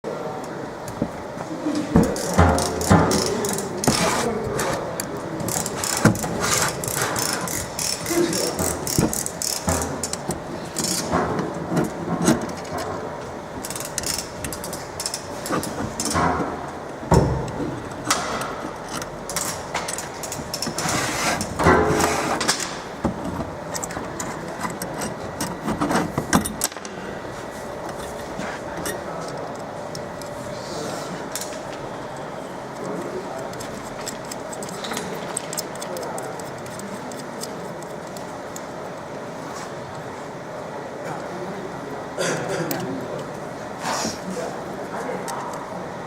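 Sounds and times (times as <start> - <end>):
metal tools clicking and rattling: 4.7 - 12.8, 13.6 - 16.4.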